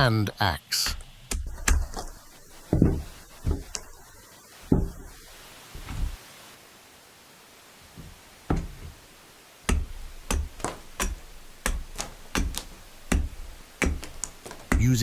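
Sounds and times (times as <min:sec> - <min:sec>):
hand axe chopping wood: 0:00.9 - 0:04.0, 0:08.5 - 0:08.9, 0:09.7 - 0:15.0.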